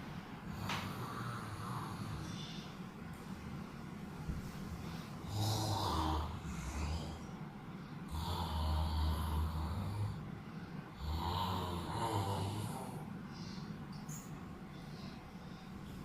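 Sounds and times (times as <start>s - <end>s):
person snoring: 0.5s - 2.7s, 5.2s - 7.3s, 8.1s - 10.3s, 10.9s - 13.1s.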